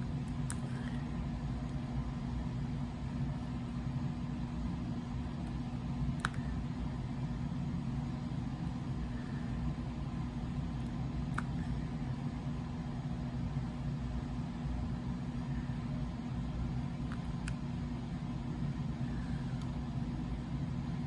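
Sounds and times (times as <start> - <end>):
low mechanical hum: 0.0 - 21.0
clicks: 0.2 - 0.9, 6.2 - 6.5.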